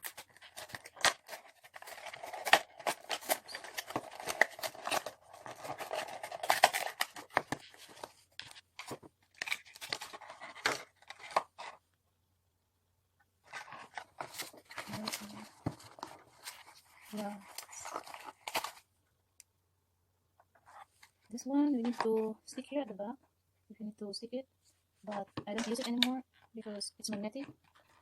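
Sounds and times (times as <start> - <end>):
packaging tearing and rustling: 0.0 - 11.8, 13.5 - 18.8.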